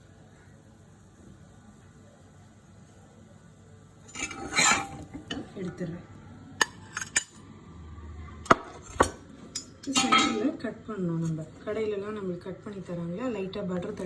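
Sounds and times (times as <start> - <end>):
utensil scraping pan: 4.1 - 5.5, 10.0 - 10.5
metal utensils clinking: 4.1 - 5.9, 6.6 - 7.4, 8.8 - 10.6.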